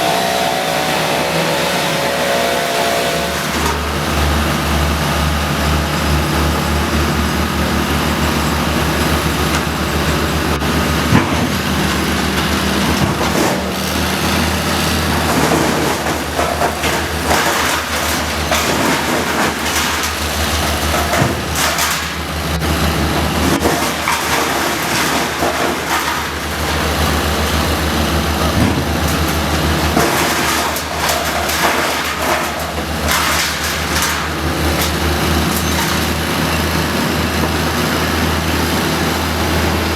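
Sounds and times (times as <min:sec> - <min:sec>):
heavy machinery engine running: 0:00.0 - 0:39.9
knocks and cracks: 0:15.0 - 0:22.2, 0:23.3 - 0:26.9, 0:28.4 - 0:36.2.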